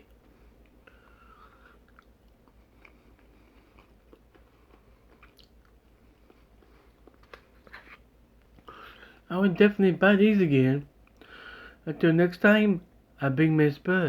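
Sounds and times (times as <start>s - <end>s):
person chewing: 0.0s - 9.2s.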